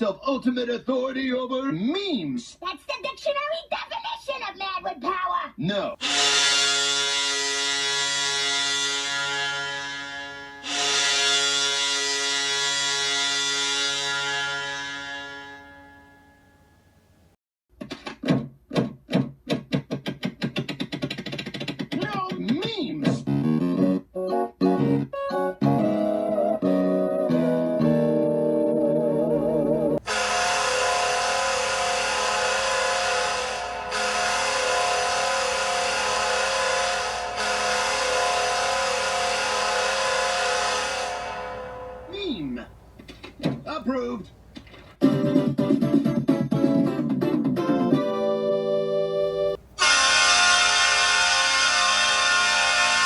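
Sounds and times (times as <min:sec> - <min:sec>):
goal horn blast: 0:06.0 - 0:16.1, 0:30.0 - 0:42.4, 0:49.2 - 0:53.0.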